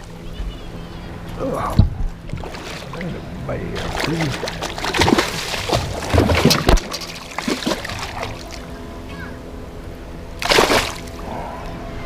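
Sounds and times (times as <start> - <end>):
steady low hum: 0.0 - 12.0
water splashing: 2.2 - 8.7, 10.4 - 11.2.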